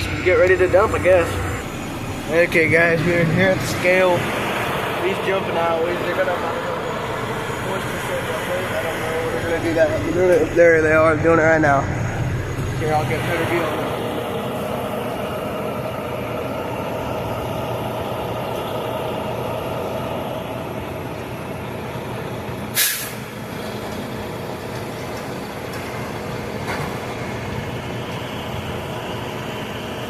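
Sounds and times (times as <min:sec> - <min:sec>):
diesel engine idling: 0:00.0 - 0:30.0
air brake hiss: 0:22.7 - 0:23.3.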